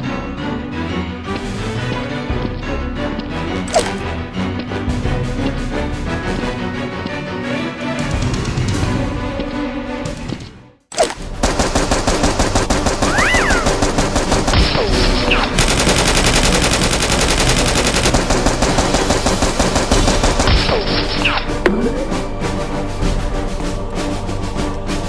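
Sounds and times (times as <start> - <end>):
music: 0.0 - 25.0
rapid automatic gunfire: 11.4 - 21.4.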